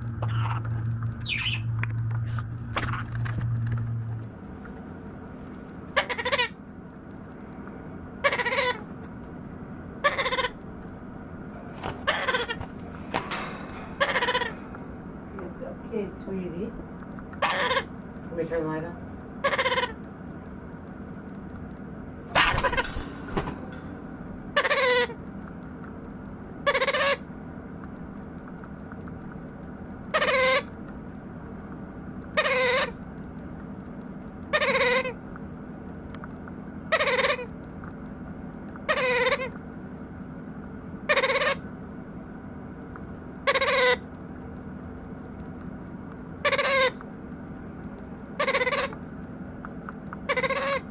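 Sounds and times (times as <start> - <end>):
faint steady hum: 0.0 - 50.9
baby parrot begging calls: 1.2 - 1.7, 6.0 - 6.6, 8.2 - 8.8, 10.0 - 10.6, 12.0 - 12.7, 13.3 - 14.6, 17.4 - 17.9, 19.4 - 20.0, 22.3 - 23.5, 24.6 - 25.1, 26.6 - 27.2, 30.1 - 30.7, 32.4 - 33.0, 34.5 - 35.2, 36.9 - 37.5, 38.9 - 39.6, 41.1 - 41.6, 43.4 - 44.0, 46.4 - 47.0, 48.4 - 49.0, 50.3 - 50.9.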